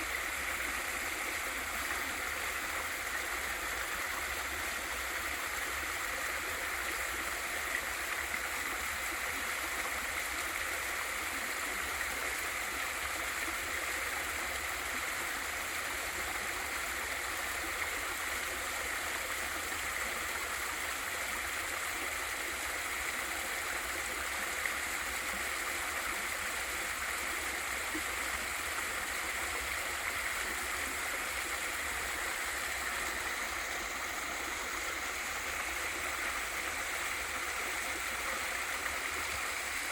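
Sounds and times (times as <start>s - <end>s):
waterfall pouring and splashing: 0.0s - 39.9s.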